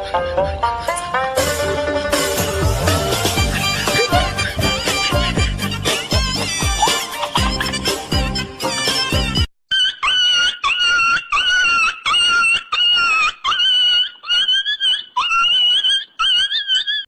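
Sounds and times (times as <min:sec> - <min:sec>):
high-pitched squealing cry: 0:09.7 - 0:17.0.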